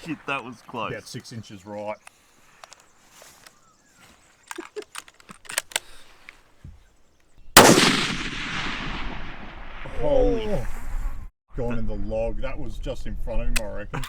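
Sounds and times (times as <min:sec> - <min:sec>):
faint clicks: 0:02.0 - 0:07.4
rifle shot with long echo: 0:07.6 - 0:10.2.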